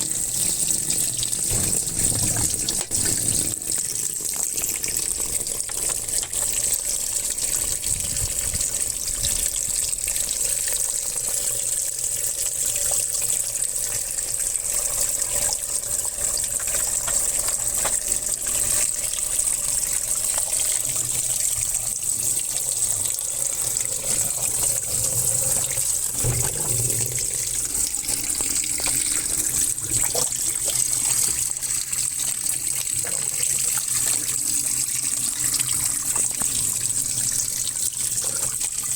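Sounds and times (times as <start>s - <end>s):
water gushing into washing machine: 0.0s - 38.9s.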